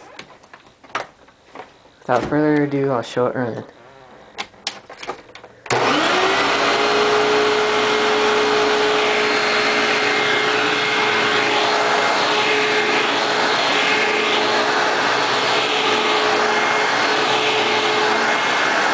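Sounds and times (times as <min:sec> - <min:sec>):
vacuum cleaner motor whining: 0:05.7 - 0:18.9.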